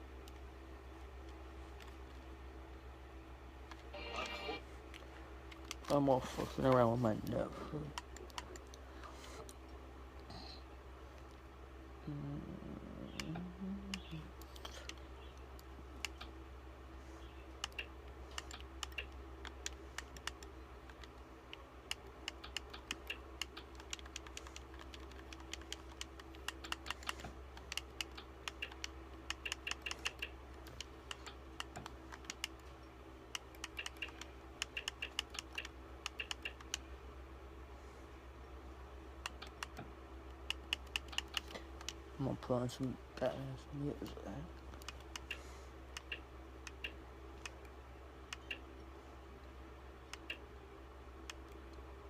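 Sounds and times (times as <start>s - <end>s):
steady low hum: 0.0s - 52.0s
keyboard typing clicks: 17.6s - 32.7s, 33.3s - 36.8s, 39.2s - 42.0s, 44.7s - 47.7s, 48.3s - 48.7s.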